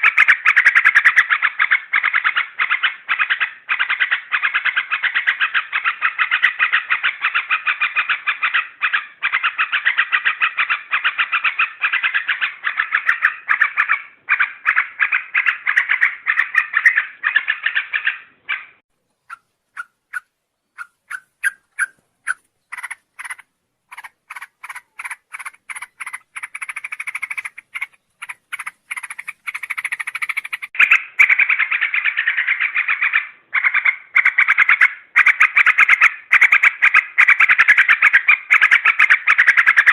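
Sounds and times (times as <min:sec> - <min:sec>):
bird singing chattering notes: 0:19.0 - 0:33.2.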